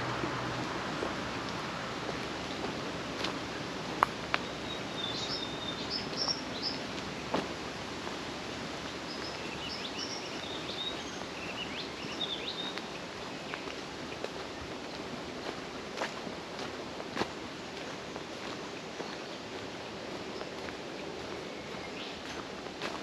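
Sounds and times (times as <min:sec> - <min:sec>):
steady background hiss: 0:00.0 - 0:23.0
small birds chirping: 0:03.4 - 0:07.4, 0:08.8 - 0:15.1, 0:17.7 - 0:23.0.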